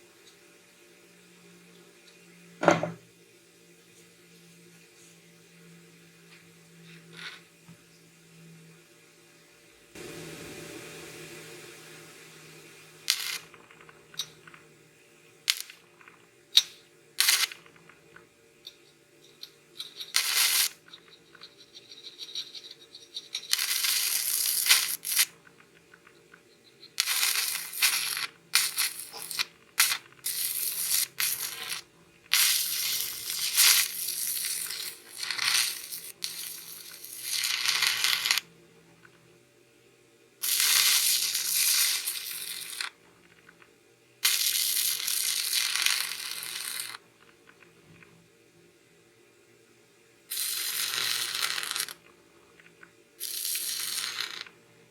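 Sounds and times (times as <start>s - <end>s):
welding arc crackling: 12.8s - 14.7s, 15.5s - 16.2s, 17.2s - 18.8s, 19.4s - 21.5s, 22.2s - 38.5s, 40.4s - 43.0s, 44.2s - 47.1s, 50.3s - 52.1s, 53.2s - 54.5s.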